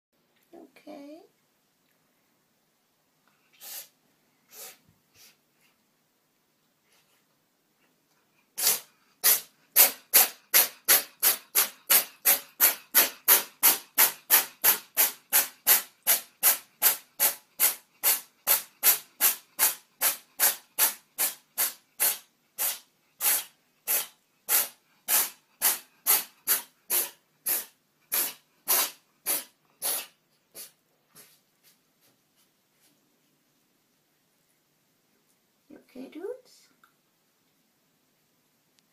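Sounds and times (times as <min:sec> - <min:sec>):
cat sneezing: 0:03.5 - 0:05.4, 0:08.6 - 0:30.8.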